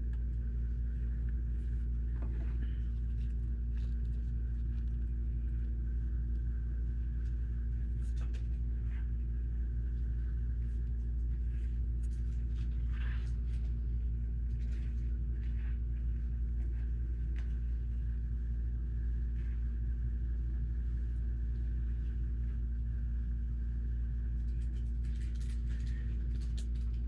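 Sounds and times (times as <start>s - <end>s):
low hum: 0.0s - 27.0s.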